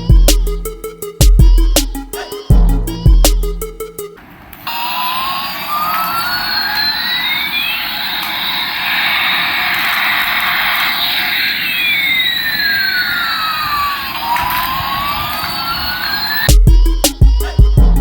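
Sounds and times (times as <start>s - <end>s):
toy jet engine sound effect: 4.6s - 17.7s.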